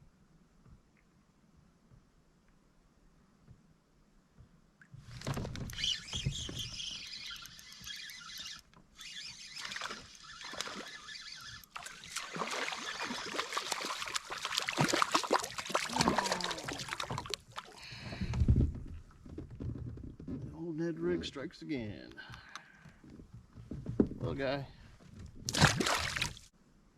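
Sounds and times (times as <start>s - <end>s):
water splashing: 5.2s - 18.0s, 25.5s - 26.5s.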